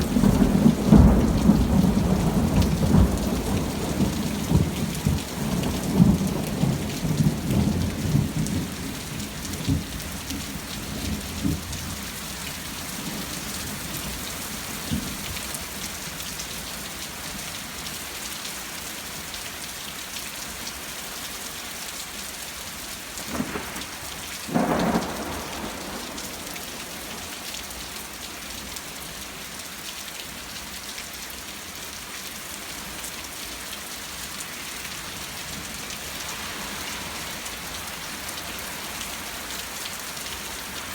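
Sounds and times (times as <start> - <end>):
thunder rumble: 0.0 - 8.8, 23.2 - 27.5
rain falling steadily: 0.0 - 40.9.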